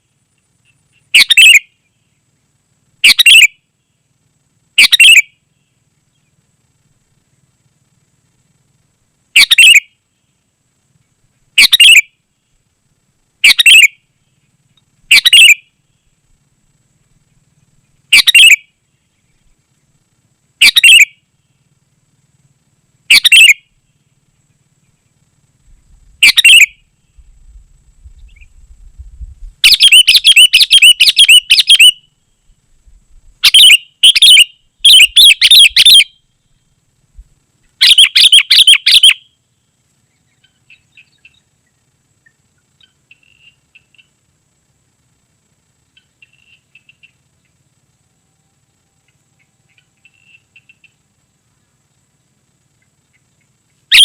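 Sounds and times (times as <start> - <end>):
bird chirping: 0.6 - 2.2, 4.8 - 6.4, 9.4 - 10.3, 11.6 - 12.1, 15.1 - 16.1, 17.8 - 19.5, 20.6 - 21.2, 23.1 - 23.7, 26.2 - 27.3, 28.1 - 28.6, 29.6 - 32.6, 33.4 - 36.7, 37.6 - 39.4, 40.1 - 44.2.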